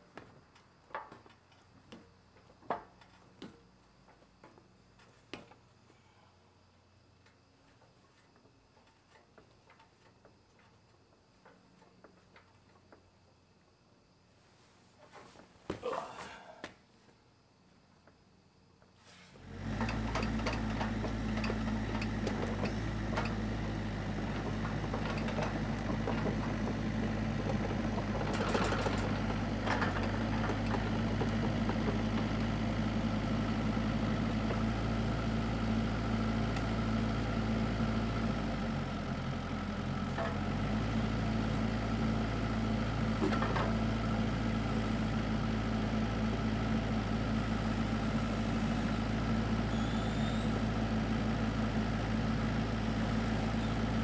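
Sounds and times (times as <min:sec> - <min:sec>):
excavator diesel engine idling: 0:19.4 - 0:54.0.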